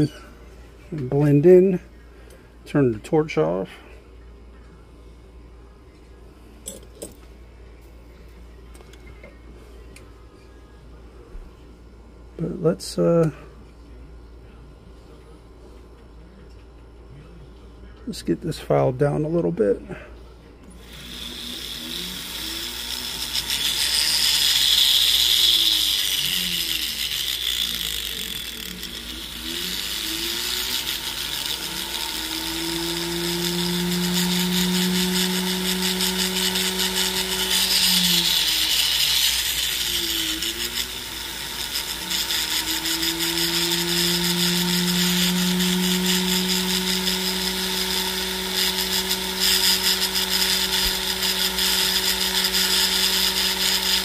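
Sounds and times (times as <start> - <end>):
rotary tool grinding metal: 0.0 - 0.2, 20.8 - 54.0.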